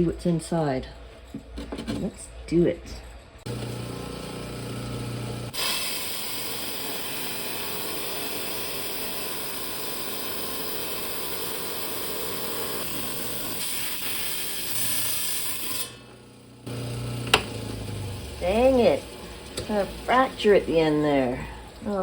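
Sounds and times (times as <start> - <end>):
saw blade grinding stone: 11.7 - 16.1.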